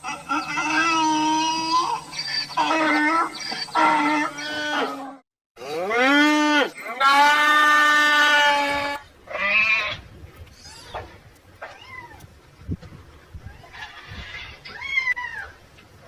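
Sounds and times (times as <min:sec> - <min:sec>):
farm animal bleating: 0:00.0 - 0:10.0.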